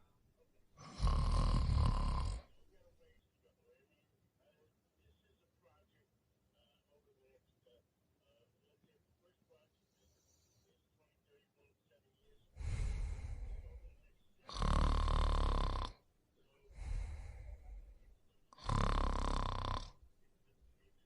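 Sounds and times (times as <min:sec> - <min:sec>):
person snoring: 0:00.8 - 0:02.6, 0:12.6 - 0:16.0, 0:16.7 - 0:20.1.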